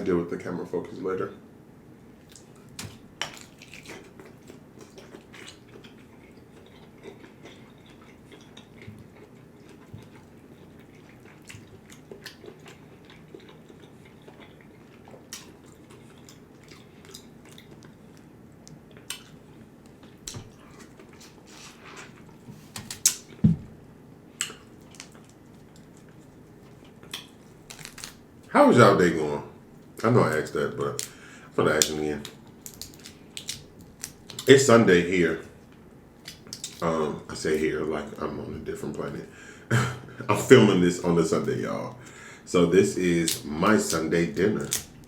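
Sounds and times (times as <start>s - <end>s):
chewing: 2.2s - 23.4s, 24.4s - 28.2s.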